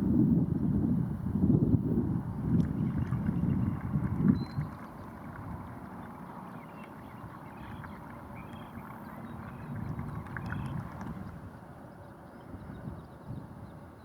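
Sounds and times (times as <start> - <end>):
distant bird chirps: 2.6 - 13.8.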